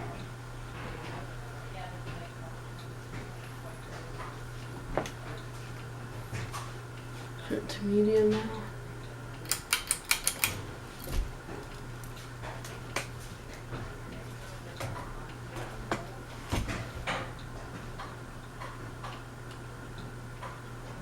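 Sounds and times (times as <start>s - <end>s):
ceiling fan motor hum: 0.0s - 21.0s
fan switch clicks: 9.3s - 12.2s.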